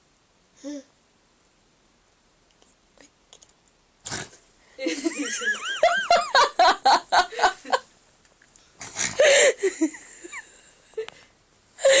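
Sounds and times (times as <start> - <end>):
stifled giggling: 4.8 - 7.9, 9.1 - 11.2.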